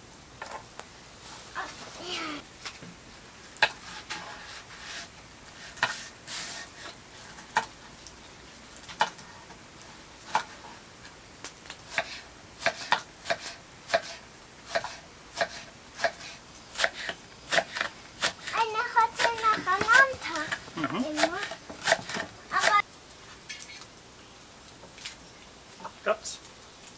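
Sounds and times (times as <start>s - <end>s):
knife chopping on cutting board: 11.9s - 18.5s, 21.2s - 22.8s.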